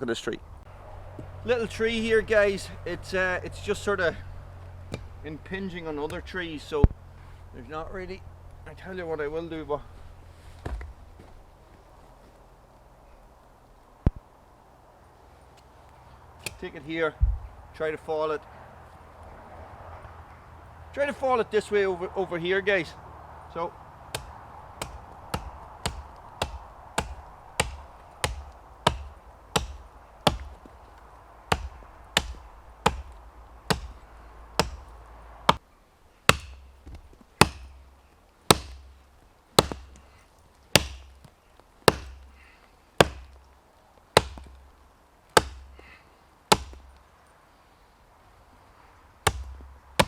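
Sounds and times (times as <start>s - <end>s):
axe chopping tree trunk: 4.8s - 5.2s, 6.0s - 6.4s, 16.4s - 16.7s, 24.1s - 35.6s, 36.3s - 39.0s, 39.6s - 40.1s, 40.7s - 43.5s, 44.2s - 44.7s, 45.3s - 45.9s, 46.5s - 47.0s, 49.2s - 50.0s.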